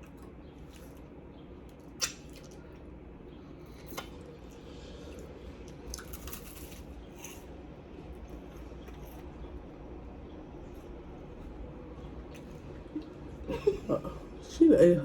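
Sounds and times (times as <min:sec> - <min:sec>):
person crunching and chewing wafer: 0:00.0 - 0:09.9
crackly noise: 0:00.0 - 0:14.4.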